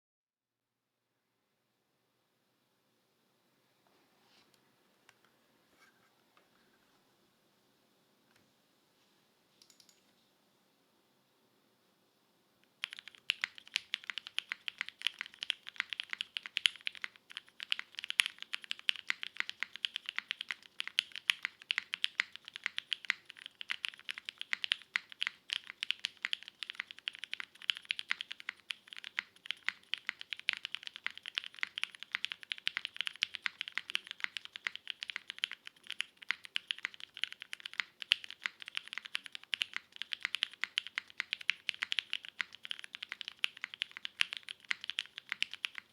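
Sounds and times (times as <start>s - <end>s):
fast typing on mechanical keyboard: 12.8s - 45.9s.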